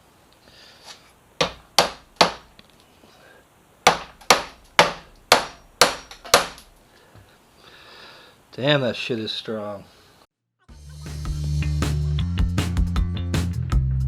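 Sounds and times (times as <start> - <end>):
hammer striking metal bracket: 3.9 - 6.8.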